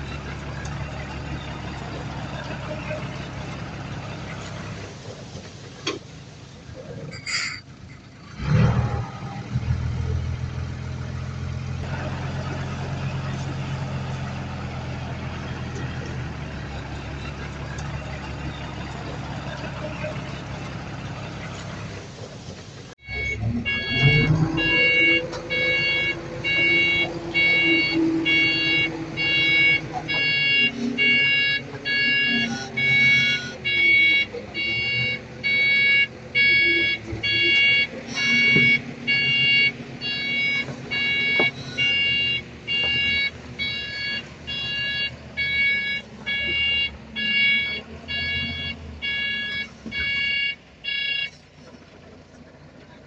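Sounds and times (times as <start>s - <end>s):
diesel engine running: 0.0s - 53.0s
backup alarm beeping: 23.0s - 51.3s.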